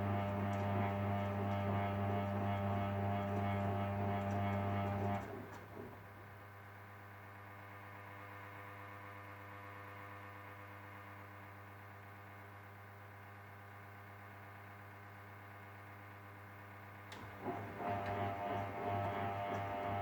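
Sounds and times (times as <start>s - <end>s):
washing machine humming: 0.0s - 7.9s, 16.6s - 20.0s.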